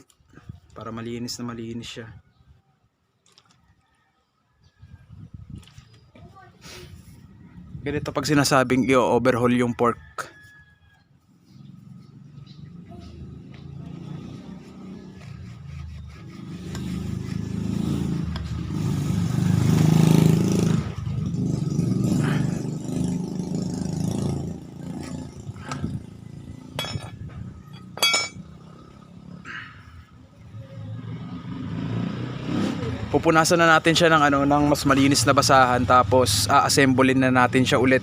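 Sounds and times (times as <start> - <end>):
sharp metallic clinks: 26.7 - 28.6.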